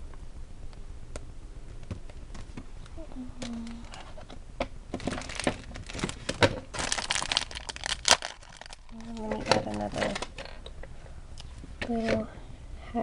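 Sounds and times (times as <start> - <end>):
paper rustling and crinkling: 5.0 - 10.3.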